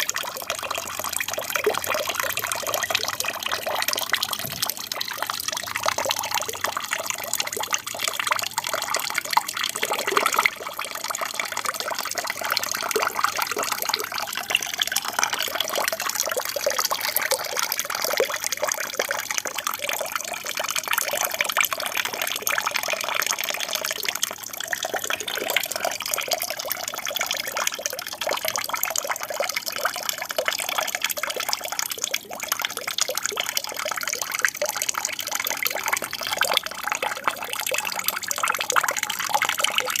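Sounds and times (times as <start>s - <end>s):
water trickling and splashing: 0.0s - 40.0s.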